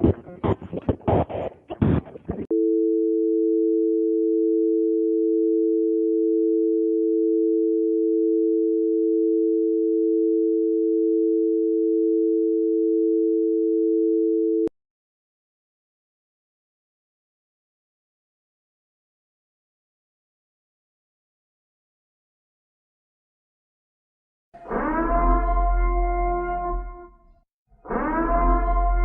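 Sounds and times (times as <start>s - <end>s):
irregular crackling noise: 0.0s - 2.5s.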